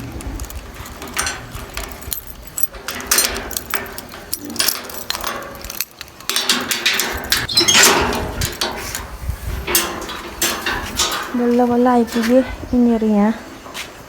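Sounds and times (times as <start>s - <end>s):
padlock clicking and rattling: 0.2s - 9.1s
keys jangling: 0.4s - 8.6s.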